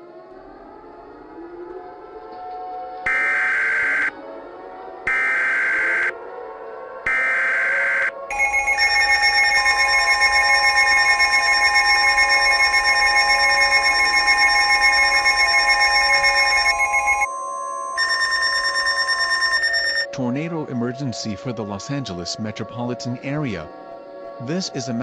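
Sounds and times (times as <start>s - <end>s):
buzzing data burst: 7.2s - 20.1s
pulsing alert attention tone: 8.3s - 20.1s.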